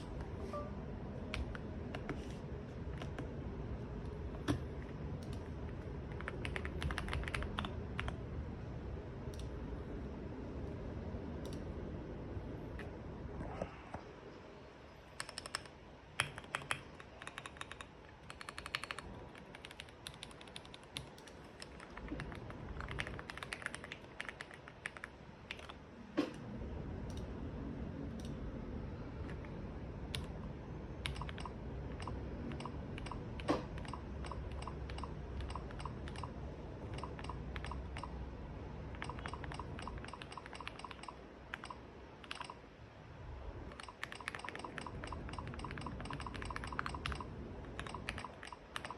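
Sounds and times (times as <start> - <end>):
low steady rumble: 0.0 - 24.2, 24.8 - 48.9
mechanical keyboard typing: 5.2 - 8.2, 15.2 - 25.8, 31.0 - 38.2, 38.9 - 42.6, 43.7 - 48.9.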